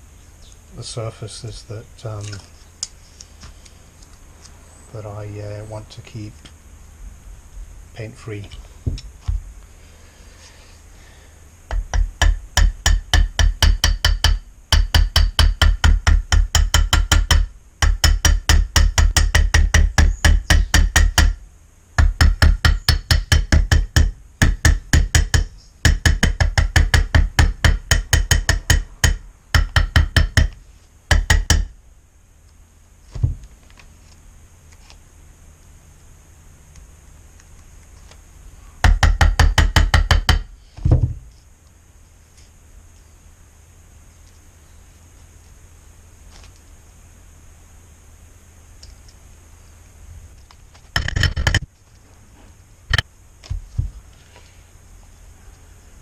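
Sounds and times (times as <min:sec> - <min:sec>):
knock: 0:51.0 - 0:51.6.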